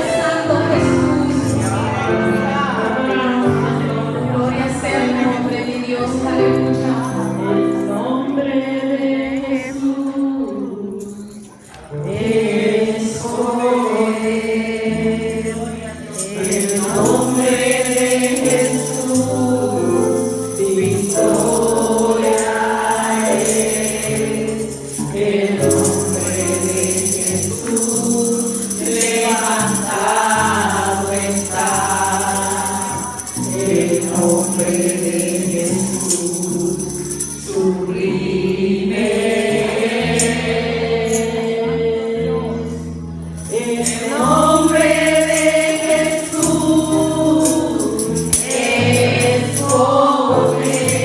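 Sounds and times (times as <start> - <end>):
group singing a gospel hymn: 0.0 - 51.0
tambourine jingling: 10.5 - 41.6, 42.6 - 51.0.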